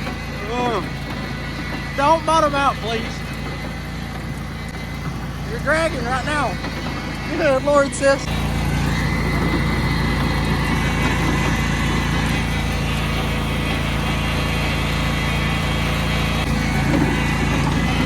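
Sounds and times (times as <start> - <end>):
riding lawnmower engine running: 0.0 - 18.0.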